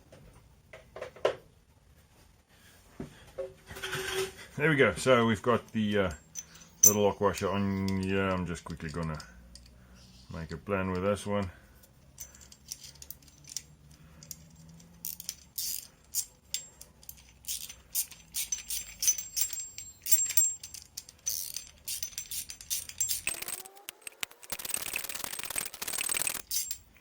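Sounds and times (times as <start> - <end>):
metal hardware clinking: 6.0 - 9.8, 11.8 - 27.0.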